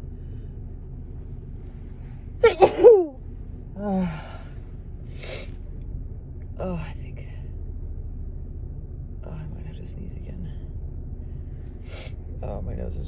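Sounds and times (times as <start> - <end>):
person sneezing: 2.4 - 3.2.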